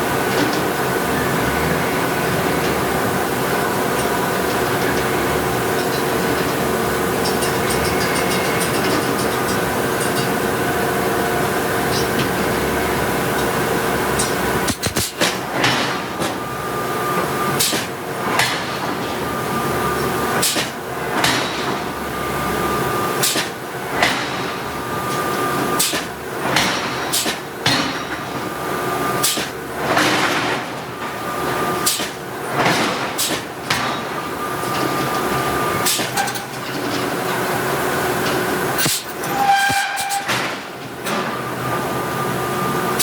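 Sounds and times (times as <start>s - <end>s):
machinery hum: 0.0s - 26.4s
forging hammer striking steel: 14.2s - 16.4s, 38.8s - 40.7s.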